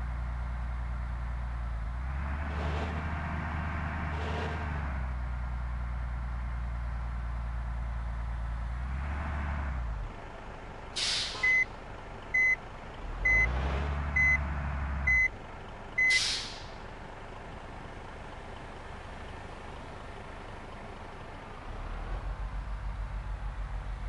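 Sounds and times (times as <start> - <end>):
heavy vehicle engine running: 0.0 - 24.0
air brake hiss: 11.0 - 11.6, 16.0 - 16.8
reversing alarm beeping: 11.4 - 11.7, 12.4 - 12.6, 14.2 - 14.4, 15.1 - 15.3.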